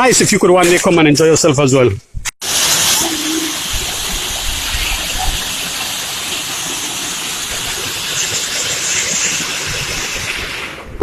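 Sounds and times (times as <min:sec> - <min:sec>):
waterfall rushing: 0:02.4 - 0:10.8.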